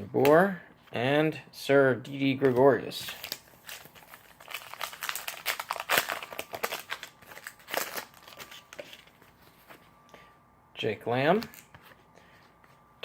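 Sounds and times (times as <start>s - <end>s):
card pack wrapper crinkling: 3.0s - 9.3s.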